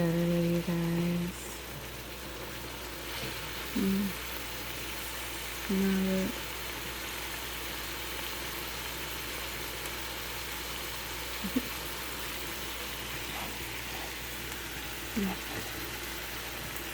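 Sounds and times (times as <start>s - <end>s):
constant low hum: 0.0s - 16.9s
steak sizzling in a pan: 0.0s - 16.9s.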